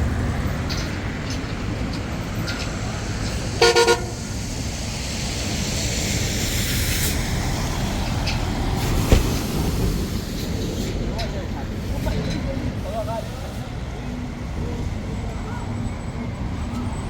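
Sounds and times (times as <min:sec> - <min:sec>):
street traffic: 0:00.0 - 0:17.0
car horn toots: 0:03.6 - 0:04.4
sharp thump: 0:08.9 - 0:10.0.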